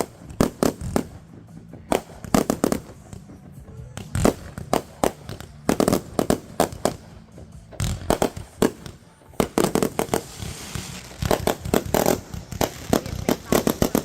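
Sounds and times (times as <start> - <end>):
fireworks bangs and cracks: 0.0 - 14.0.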